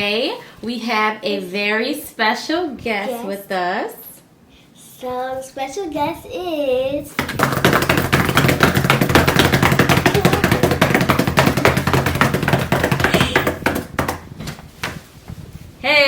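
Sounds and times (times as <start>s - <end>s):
fast drumroll: 7.2s - 14.3s.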